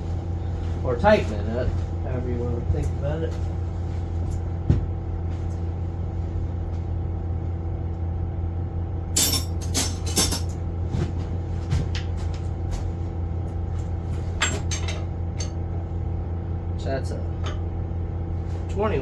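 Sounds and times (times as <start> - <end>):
wrench clinking on metal: 9.2 - 10.6.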